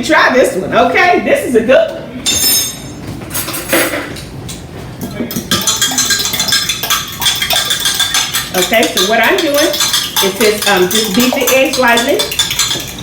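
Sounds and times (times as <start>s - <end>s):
utensil tapping in bowl: 5.0s - 13.0s.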